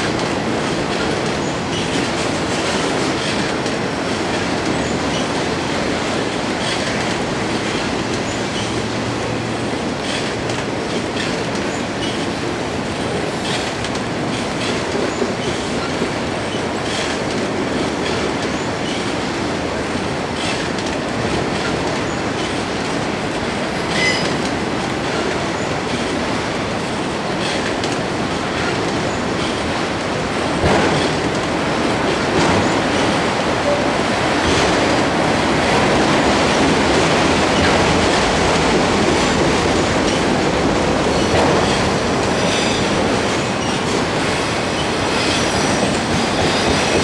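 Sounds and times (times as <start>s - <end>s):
train wheels rumbling on rail: 0.0s - 47.0s
wheel squeal: 23.8s - 24.5s, 41.1s - 47.0s
clicks over rail joints: 26.8s - 47.0s.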